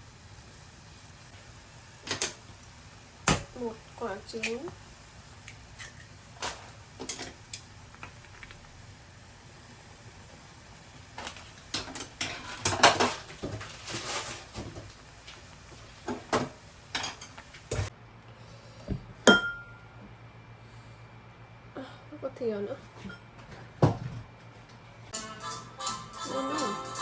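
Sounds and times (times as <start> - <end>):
dishes and utensils clinking: 11.7 - 14.8, 16.0 - 17.9, 19.3 - 19.8.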